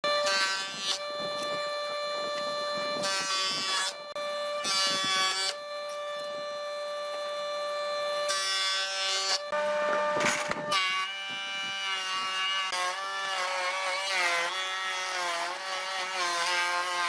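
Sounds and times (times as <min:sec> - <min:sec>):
saw rasping into wood: 0:00.1 - 0:06.1
power tool motor whine: 0:00.1 - 0:17.0.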